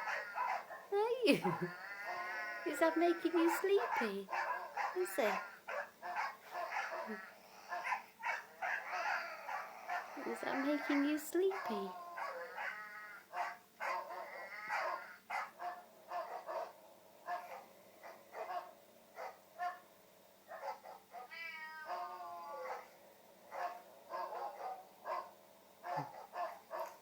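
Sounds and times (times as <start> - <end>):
cats meowing: 1.3 - 4.2, 21.2 - 22.8.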